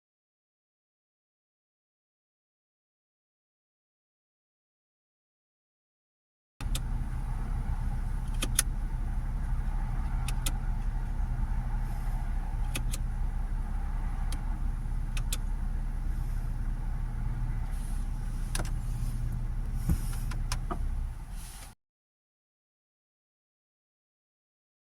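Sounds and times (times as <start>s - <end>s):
car engine low hum: 6.6s - 21.8s
light clicks: 8.2s - 8.7s, 10.0s - 10.6s, 12.6s - 13.1s, 15.1s - 15.5s.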